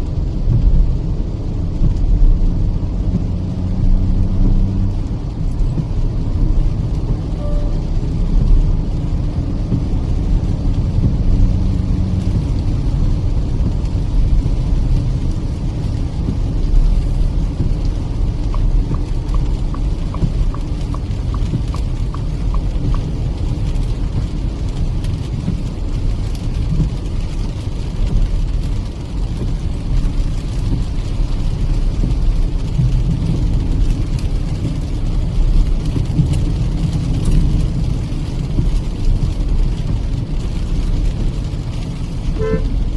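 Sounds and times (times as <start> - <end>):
rain hiss: 0.0 - 42.9
tyre and engine rumble: 0.0 - 42.9
light even ticking: 12.2 - 27.0.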